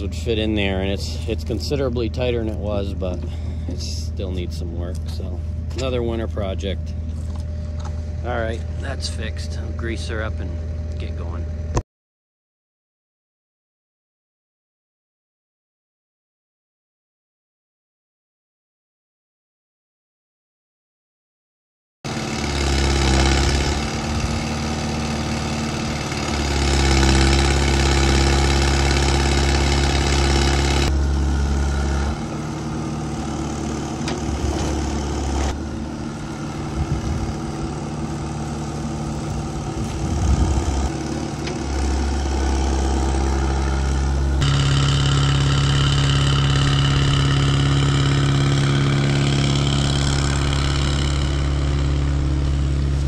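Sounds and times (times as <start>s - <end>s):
excavator diesel engine running: 0.0s - 11.8s, 22.1s - 53.0s.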